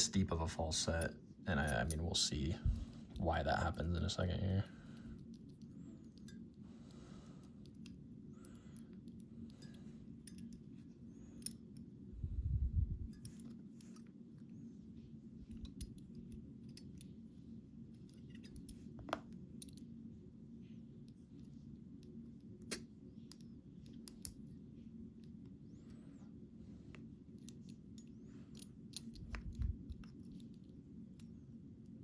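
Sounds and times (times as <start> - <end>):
steady low hum: 0.0 - 32.0
faint metallic clicks and scrapes: 4.9 - 11.9, 13.1 - 20.0, 20.6 - 24.6, 25.2 - 32.0.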